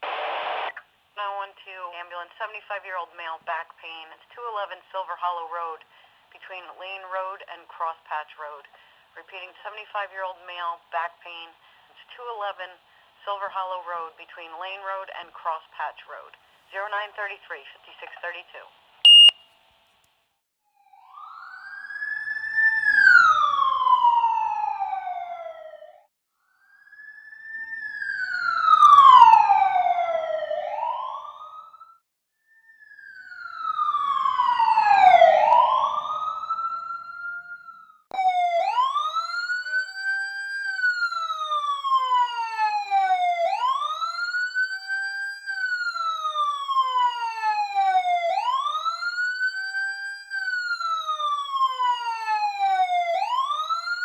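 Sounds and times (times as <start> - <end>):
emergency vehicle siren wailing: 20.8 - 32.0, 32.6 - 54.0.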